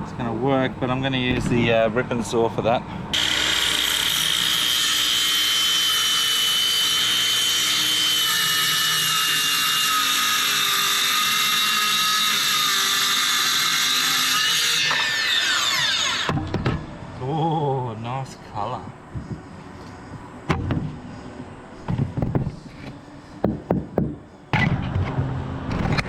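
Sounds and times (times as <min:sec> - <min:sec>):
electric power saw cutting wood: 0:03.1 - 0:16.4.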